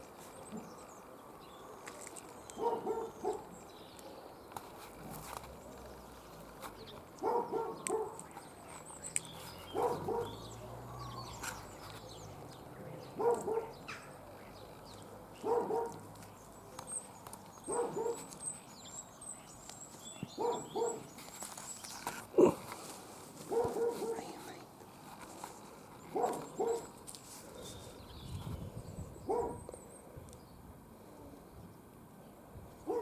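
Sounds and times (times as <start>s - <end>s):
dog barking: 2.6s - 3.6s, 7.2s - 8.3s, 9.7s - 10.6s, 13.1s - 13.8s, 15.4s - 16.1s, 17.6s - 18.3s, 20.4s - 21.1s, 23.5s - 24.4s, 26.1s - 26.9s, 29.3s - 29.6s.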